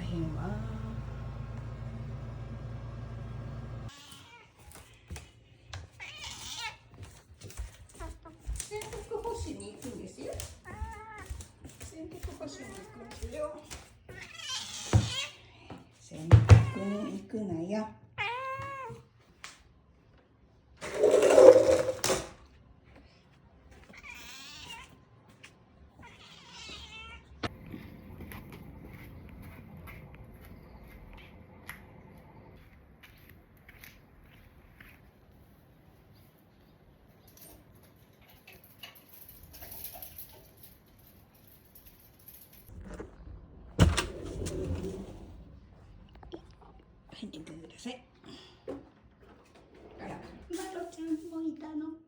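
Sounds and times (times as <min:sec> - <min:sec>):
cat meowing: 0:03.9 - 0:05.0, 0:23.9 - 0:25.0, 0:26.0 - 0:27.4
door sliding open: 0:20.8 - 0:22.3, 0:42.7 - 0:45.8.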